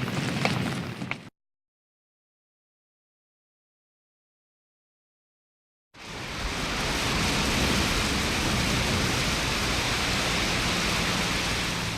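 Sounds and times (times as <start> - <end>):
heavy rain: 6.0 - 11.9.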